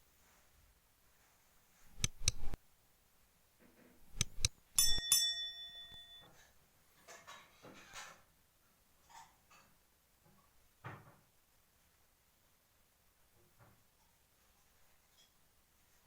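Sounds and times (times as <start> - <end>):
bell-like ringing: 4.8 - 6.3.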